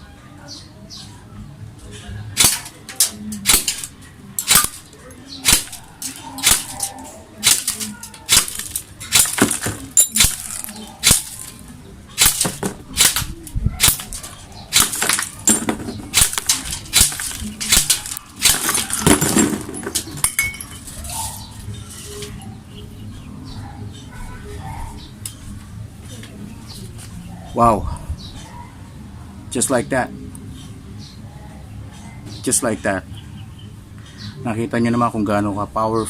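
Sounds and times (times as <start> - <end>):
airsoft rifle shots: 2.4 - 11.5, 12.2 - 19.0.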